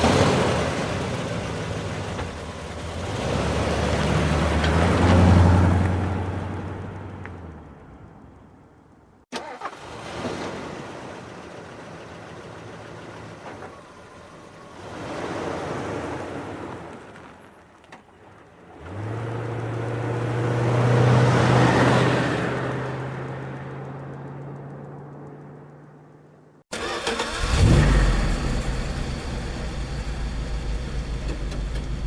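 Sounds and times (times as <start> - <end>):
car engine humming: 0.0 - 8.7, 18.1 - 32.0.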